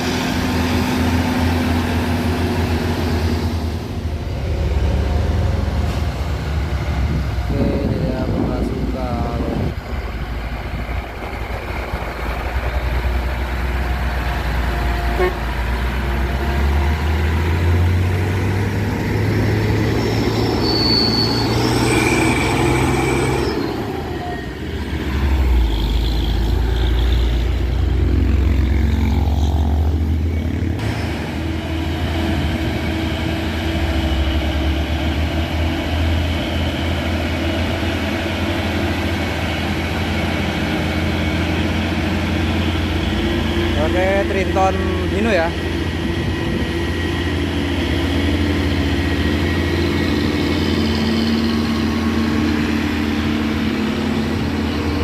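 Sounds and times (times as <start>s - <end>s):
truck diesel engines droning: 0.0s - 55.0s
high-pitched horn toot: 15.0s - 15.6s.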